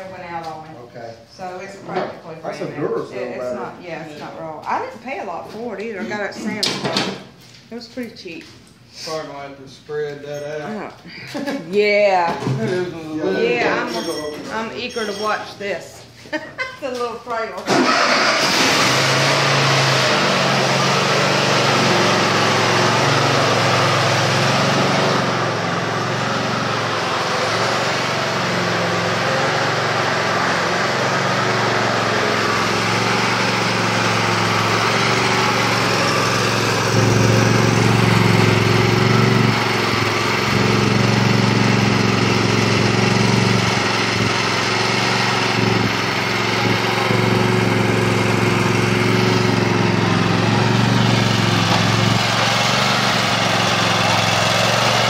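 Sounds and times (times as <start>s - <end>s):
riding lawn mower engine: 17.7s - 55.0s.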